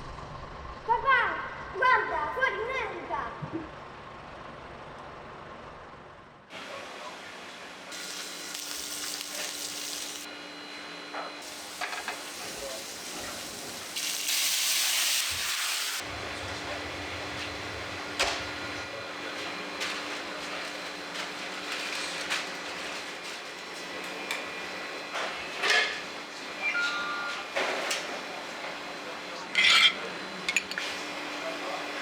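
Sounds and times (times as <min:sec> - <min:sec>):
food sizzling in a pan: 0:07.9 - 0:10.3, 0:11.4 - 0:16.0
utensils knocking: 0:29.6 - 0:30.8.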